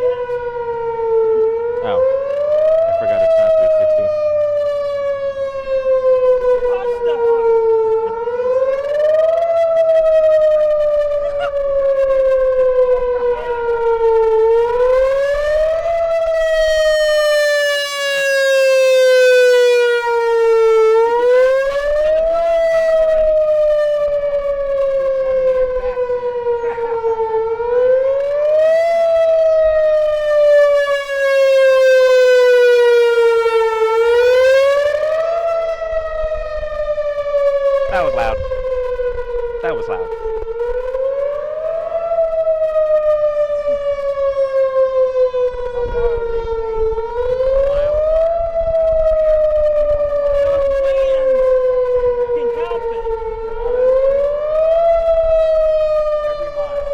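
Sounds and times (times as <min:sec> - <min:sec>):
emergency warning siren rising and falling: 0:00.0 - 0:56.9.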